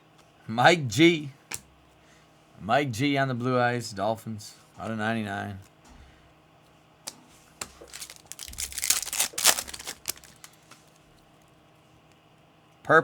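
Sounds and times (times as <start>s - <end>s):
packaging crinkling: 7.8s - 11.0s.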